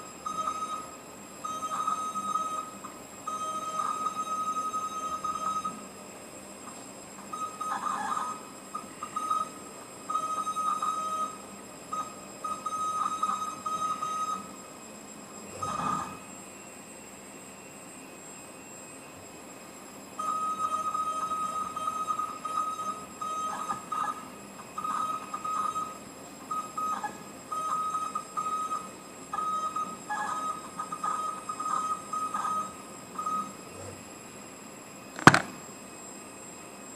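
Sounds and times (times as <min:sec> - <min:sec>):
machine drive high whine: 0:00.0 - 0:36.9
sharp loud click: 0:35.2 - 0:35.6.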